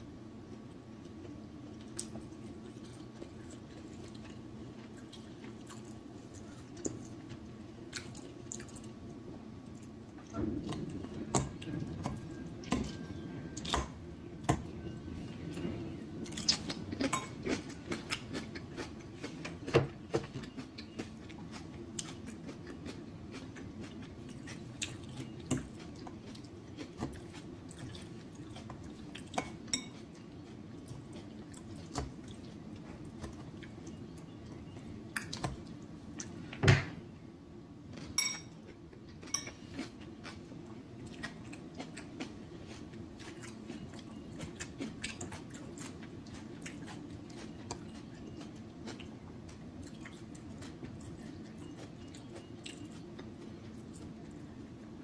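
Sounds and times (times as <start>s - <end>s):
cutlery clinking on dishes: 38.1s - 38.6s, 39.3s - 39.6s.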